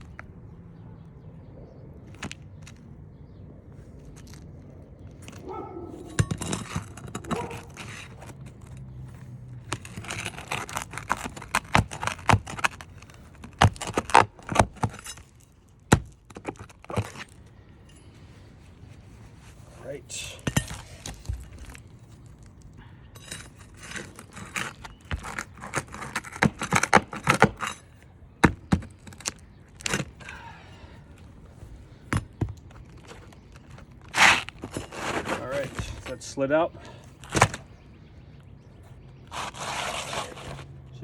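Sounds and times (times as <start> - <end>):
pry bar scraping and clicking: 4.0 - 18.2, 20.2 - 30.5, 31.1 - 36.2, 39.0 - 40.8.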